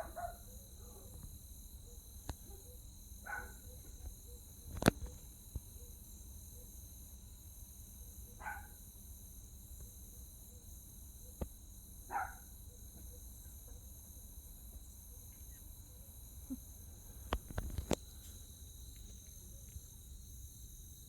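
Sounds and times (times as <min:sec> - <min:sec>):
distant dog barking: 0:00.0 - 0:01.2, 0:02.4 - 0:03.9, 0:08.4 - 0:08.7, 0:12.1 - 0:12.5
crickets chirping: 0:00.0 - 0:21.0.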